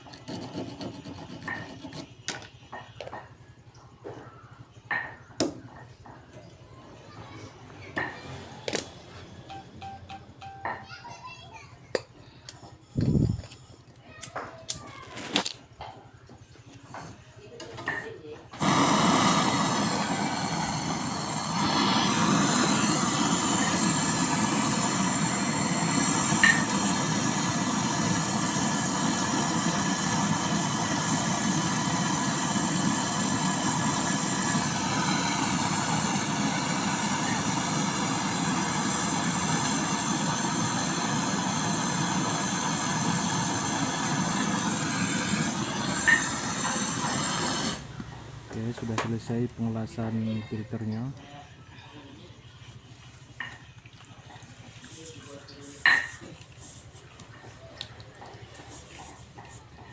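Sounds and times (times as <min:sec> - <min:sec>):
torch flame hissing: 0:00.0 - 0:02.1, 0:18.5 - 0:48.1.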